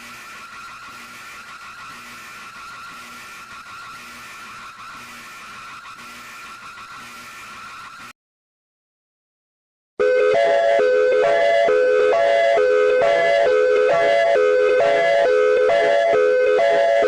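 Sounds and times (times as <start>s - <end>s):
heavy static: 0.0s - 8.1s.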